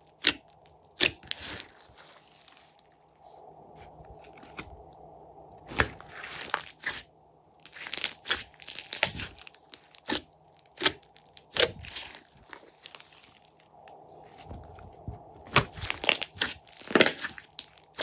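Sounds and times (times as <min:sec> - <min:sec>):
slime popping and crackling: 0:01.0 - 0:01.9, 0:07.7 - 0:13.4, 0:15.5 - 0:18.0.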